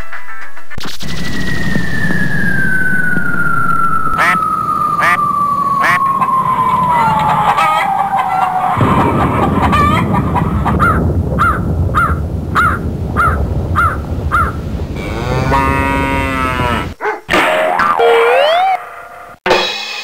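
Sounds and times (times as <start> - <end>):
falling tone: 0.8 - 19.4
loud rough rumble: 8.7 - 17.0
wobbling boing: 17.3 - 19.2.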